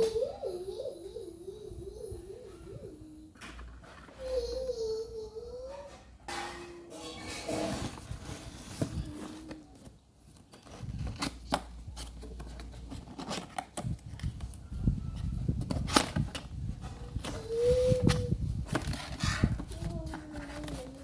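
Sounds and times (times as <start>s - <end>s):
packaging rustling: 7.7s - 14.7s, 15.5s - 21.0s.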